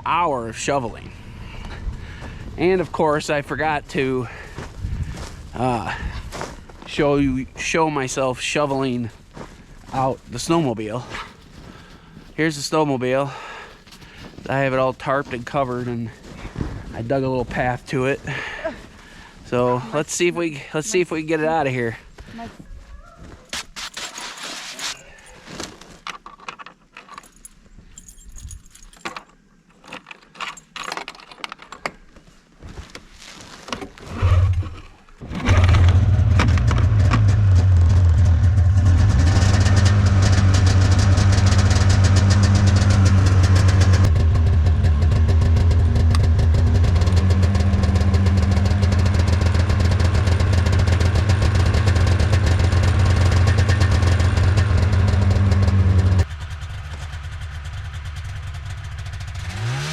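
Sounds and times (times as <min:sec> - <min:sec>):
snowmobile engine starting and idling: 0:00.0 - 0:20.2, 0:34.0 - 0:59.9.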